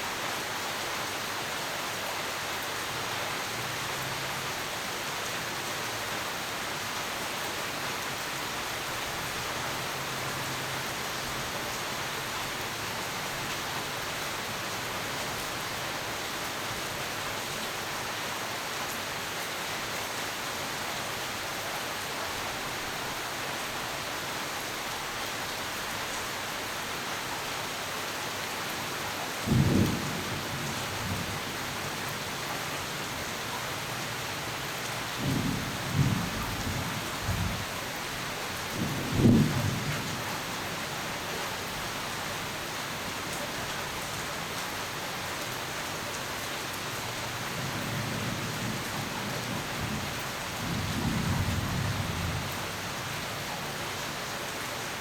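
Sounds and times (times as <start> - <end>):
heavy rain hissing: 28.8 - 55.0
thunder clap and rumble: 38.8 - 40.2.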